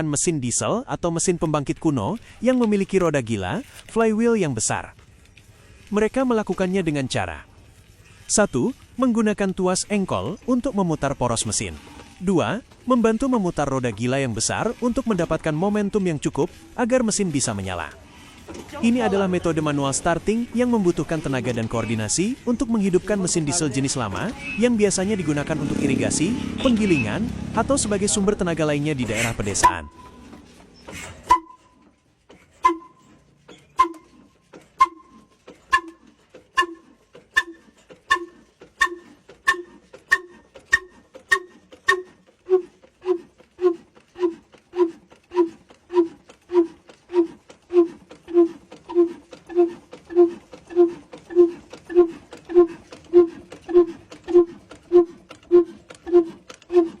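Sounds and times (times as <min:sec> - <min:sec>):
diesel engine exhaust pops: 0:29.2 - 0:42.3.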